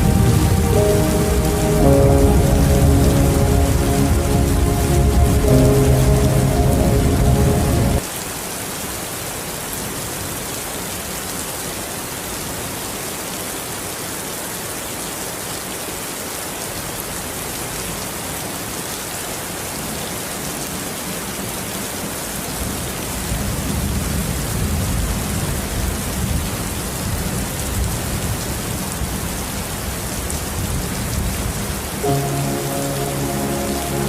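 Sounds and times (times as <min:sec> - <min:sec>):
thunder rumbling: 0:00.0 - 0:08.0
heavy rain falling: 0:00.0 - 0:34.0.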